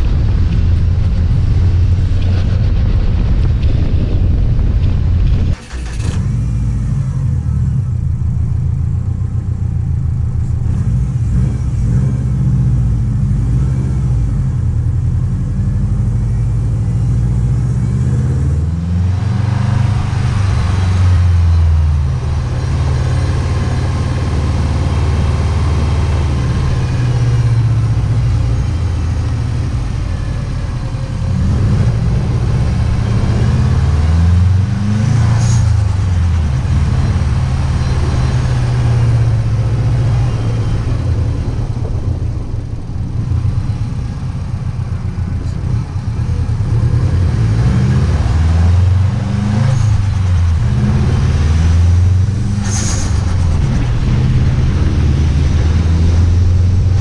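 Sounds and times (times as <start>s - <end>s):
car engine revving hard: 46.5s - 57.0s.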